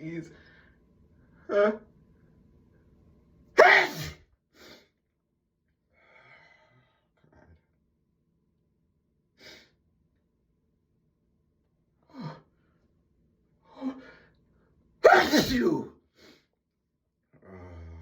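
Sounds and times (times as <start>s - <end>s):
loud sneeze: 3.6s - 4.3s, 15.0s - 15.9s.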